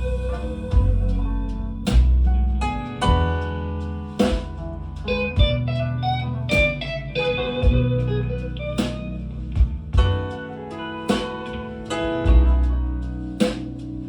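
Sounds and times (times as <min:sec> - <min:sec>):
bass line: 0:00.0 - 0:14.0
blues music over speakers: 0:00.0 - 0:14.0
plucked guitar: 0:00.0 - 0:14.0
drum hits: 0:00.1 - 0:01.3, 0:01.9 - 0:03.5, 0:04.2 - 0:05.9, 0:06.5 - 0:08.2, 0:08.8 - 0:10.4, 0:11.1 - 0:12.8.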